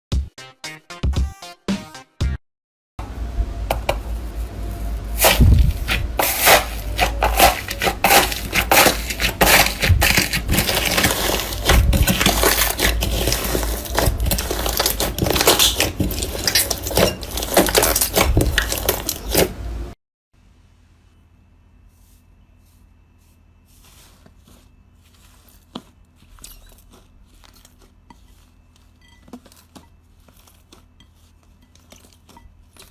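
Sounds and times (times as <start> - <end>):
crunchy crackles and squishes: 4.0 - 19.7, 21.9 - 32.9.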